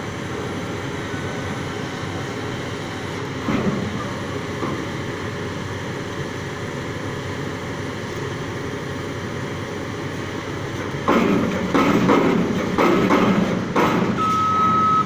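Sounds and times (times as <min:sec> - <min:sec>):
heavy machinery droning: 0:00.0 - 0:15.0.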